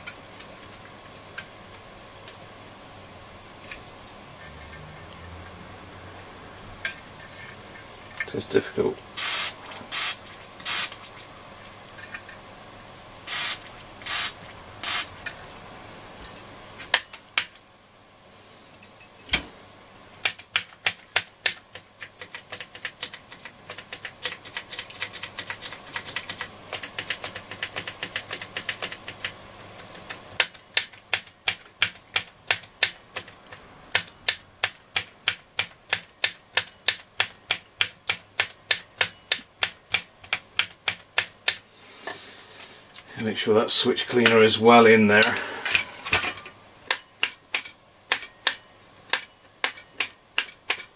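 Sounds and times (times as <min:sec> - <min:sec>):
aerosol spray hissing: 0:09.2 - 0:11.0, 0:13.3 - 0:15.1.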